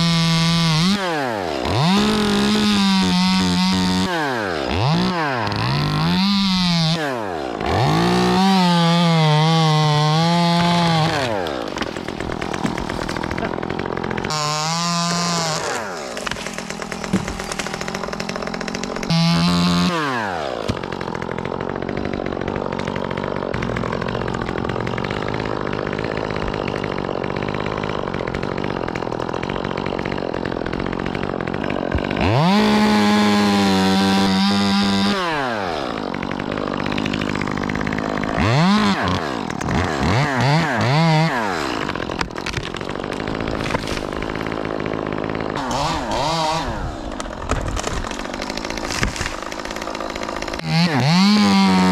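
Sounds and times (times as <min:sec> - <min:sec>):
chainsaw revving: 0:00.0 - 0:51.9.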